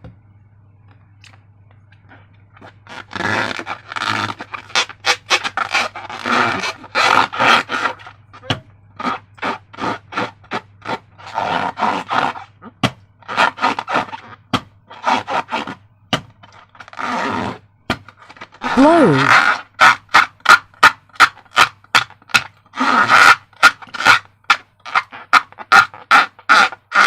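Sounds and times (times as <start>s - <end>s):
slime squishing: 18.6s - 19.3s.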